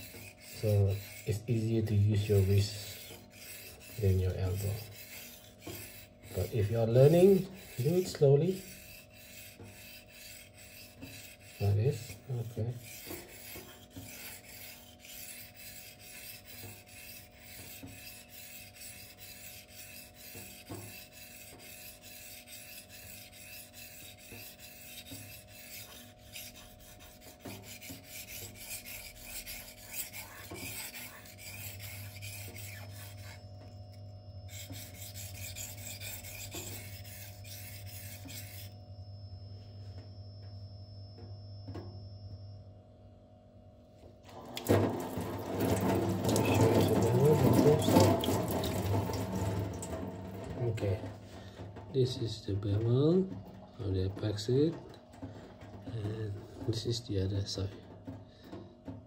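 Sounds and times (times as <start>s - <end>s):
knife scraping on whetstone: 0.0s - 38.8s, 44.6s - 51.5s.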